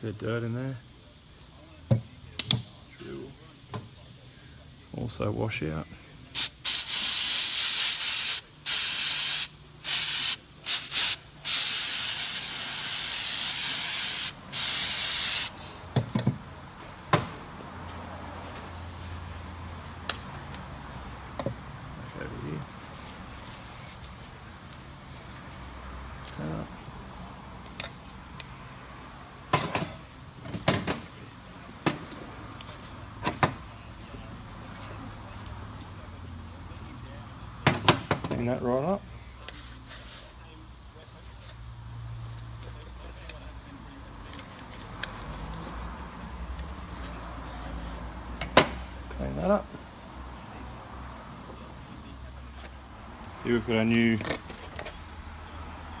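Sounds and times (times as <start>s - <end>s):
aerosol spray bursts: 6.4s - 15.6s.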